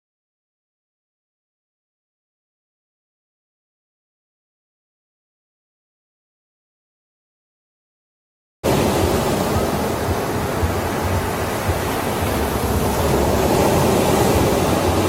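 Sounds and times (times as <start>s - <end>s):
surf: 8.7s - 15.0s
wind gusts hitting microphone: 8.7s - 15.0s.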